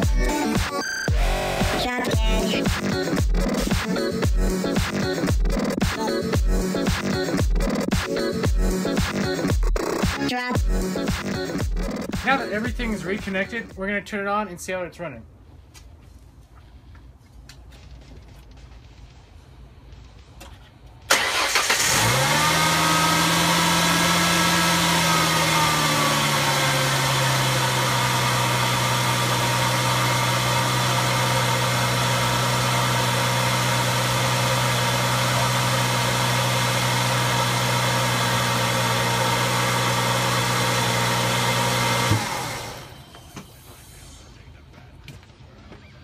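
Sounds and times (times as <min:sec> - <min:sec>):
car engine starting and idling: 0:00.0 - 0:05.7, 0:18.2 - 0:44.6.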